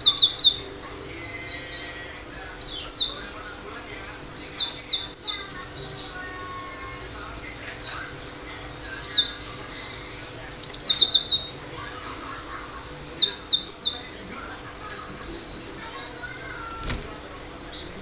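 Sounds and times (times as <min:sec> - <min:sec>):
bird singing whistled notes: 0:00.0 - 0:09.9, 0:10.5 - 0:11.6, 0:13.0 - 0:14.2.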